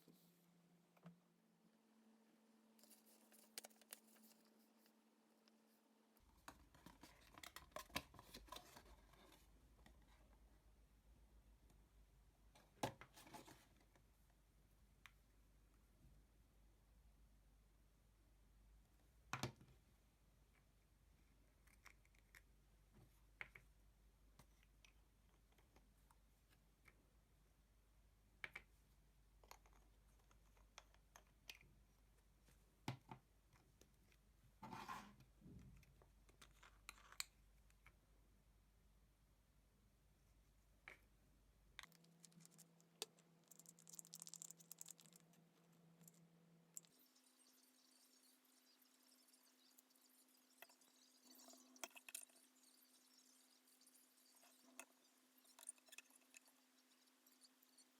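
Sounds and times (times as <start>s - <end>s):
faint small clicks and taps: 21.5s - 23.8s.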